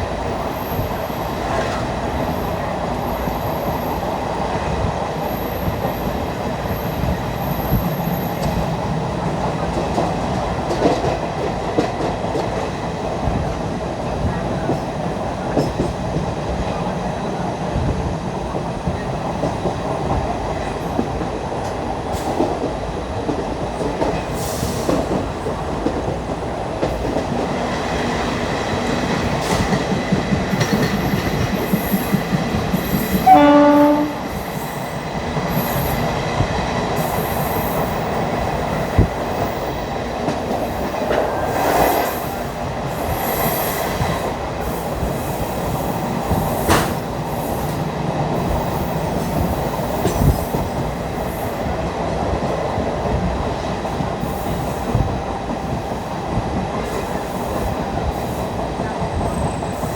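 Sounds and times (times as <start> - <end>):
train wheel and rail noise: 0.0 - 59.9
locomotive horn blast: 33.2 - 34.3.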